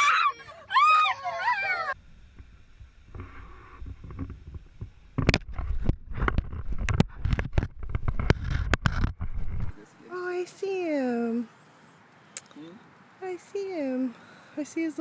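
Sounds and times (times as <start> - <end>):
sharp clicks and knocks: 3.2 - 9.8.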